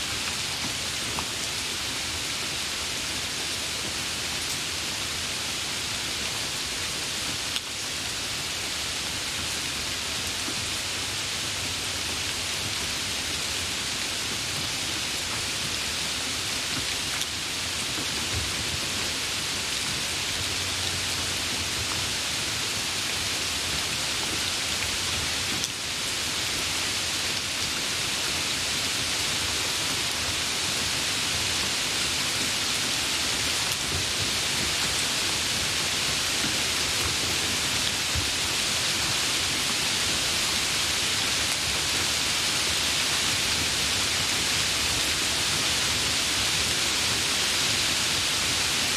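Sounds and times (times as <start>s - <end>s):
dense rain falling: 0.0s - 48.9s.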